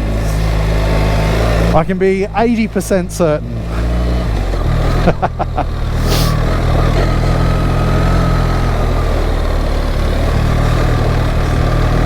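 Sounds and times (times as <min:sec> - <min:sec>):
motorcycle engine at low revs: 0:00.0 - 0:12.0
short hiss: 0:06.0 - 0:06.4.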